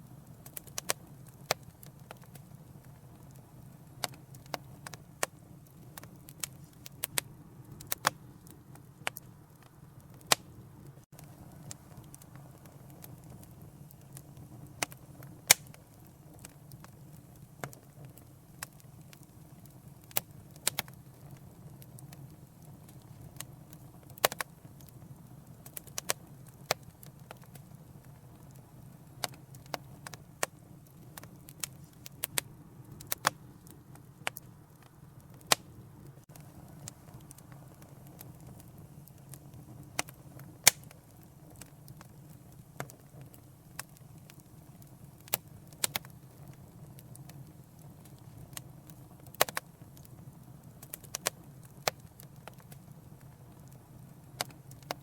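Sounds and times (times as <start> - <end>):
fire crackling and popping: 0.0 - 55.0
fire flames rumbling: 0.0 - 55.0.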